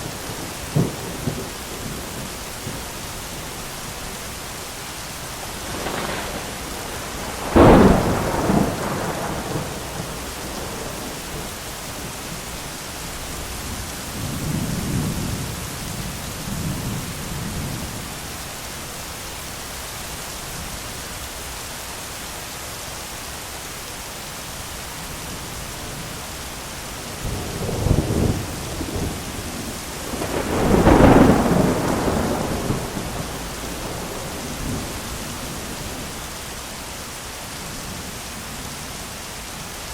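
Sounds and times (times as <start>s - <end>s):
thunder rumbling: 0.0s - 4.1s, 5.3s - 12.5s, 27.2s - 36.4s
heavy rain: 0.0s - 39.9s.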